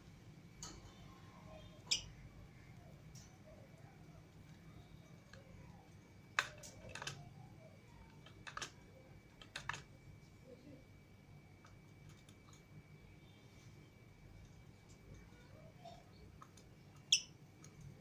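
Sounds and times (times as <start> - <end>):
faint high tone: 0.6 - 6.0.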